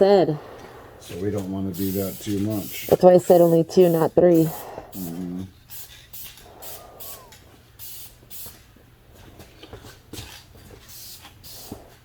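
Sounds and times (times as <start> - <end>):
steady low hum: 0.0 - 10.8
spray can hissing: 1.7 - 8.6, 10.9 - 12.0.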